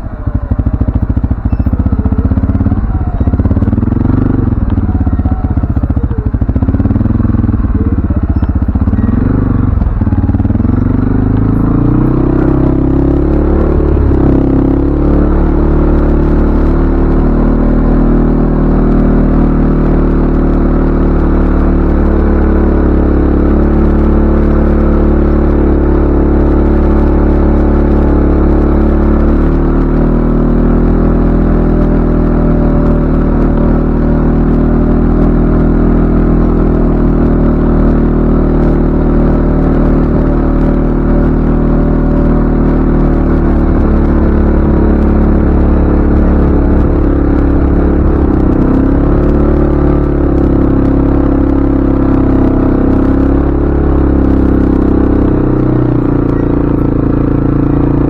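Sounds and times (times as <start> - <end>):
atv engine droning: 0.0 - 58.0.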